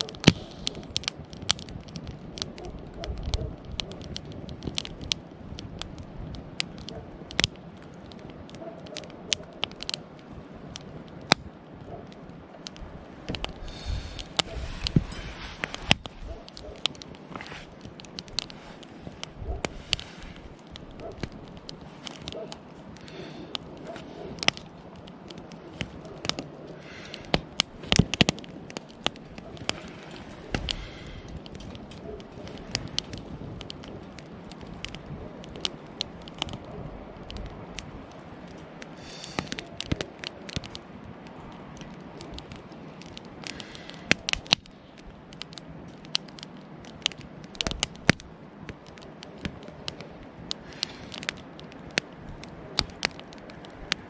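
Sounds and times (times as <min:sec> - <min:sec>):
fire hiss: 0:00.0 - 0:02.5, 0:13.0 - 0:36.6, 0:37.6 - 0:40.7, 0:41.8 - 0:45.1, 0:50.0 - 0:54.0
campfire crackling and popping: 0:00.0 - 0:54.0.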